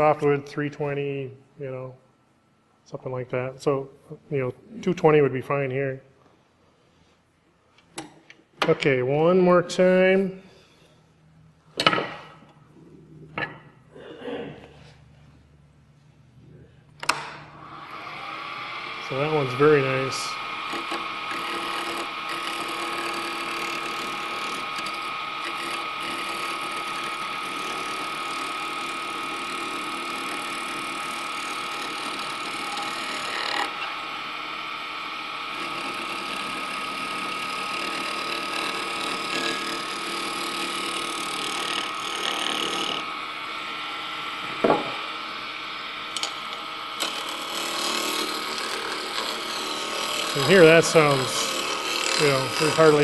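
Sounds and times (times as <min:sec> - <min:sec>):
wood lathe whirring: 0:17.0 - 0:53.0
turning tool cutting wood: 0:17.6 - 0:53.0.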